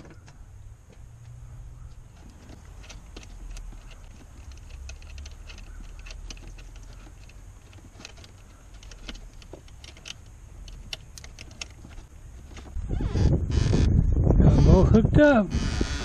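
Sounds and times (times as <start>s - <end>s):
metallic clicks and clinks: 2.2s - 12.0s.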